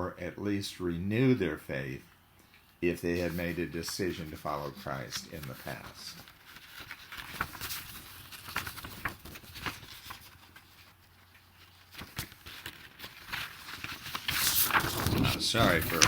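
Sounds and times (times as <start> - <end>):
paper pages crackling apart: 3.3 - 16.0.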